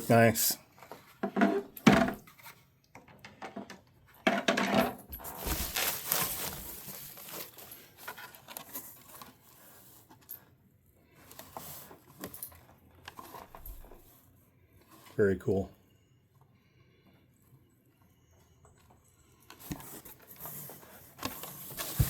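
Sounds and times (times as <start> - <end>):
rustling: 5.1 - 10.4, 19.5 - 22.0.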